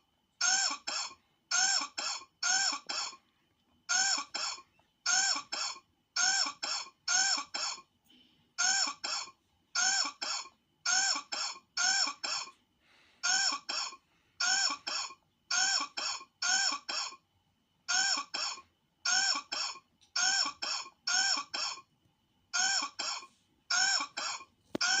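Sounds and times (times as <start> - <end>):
person coughing: 3.9 - 12.6, 13.2 - 17.2, 17.9 - 21.9, 22.6 - 25.0.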